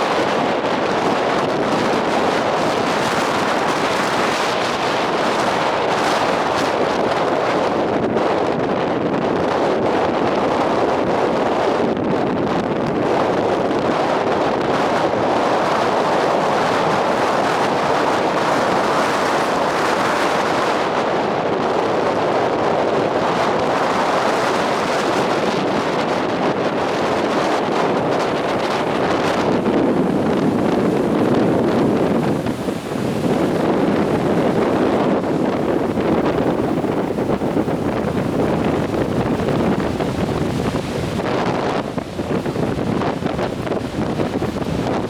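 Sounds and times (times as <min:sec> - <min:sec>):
sea surf: 0:00.0 - 0:45.0
wind buffeting microphone: 0:00.0 - 0:45.0.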